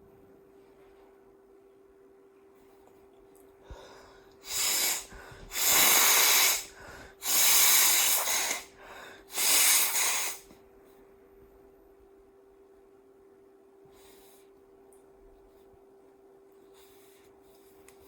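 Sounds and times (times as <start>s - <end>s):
person blowing nose: 4.4s - 10.5s.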